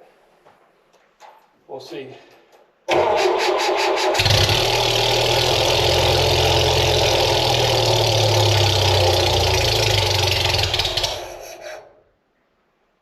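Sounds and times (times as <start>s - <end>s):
engine cranking and starting: 2.9s - 11.9s.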